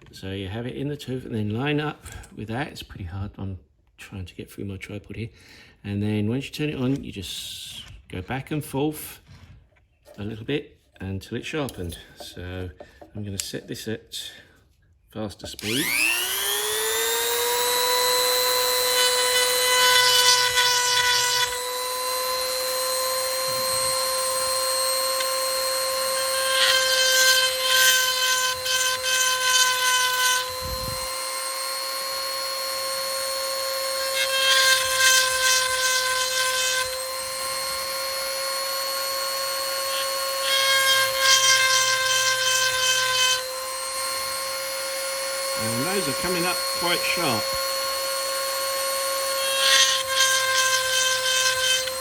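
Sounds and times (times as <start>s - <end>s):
grinding rasps on metal: 15.5s - 52.0s
rotary tool high whine: 15.6s - 52.0s.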